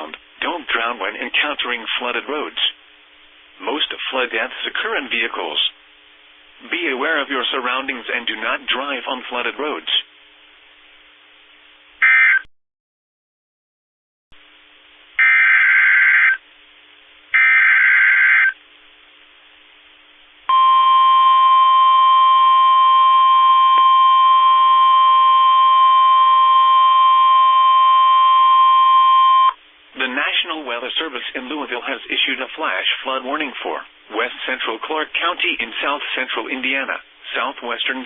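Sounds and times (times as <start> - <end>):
screeching data bursts: 15.2 - 16.4, 17.4 - 18.6
steady attention tone: 20.5 - 29.6.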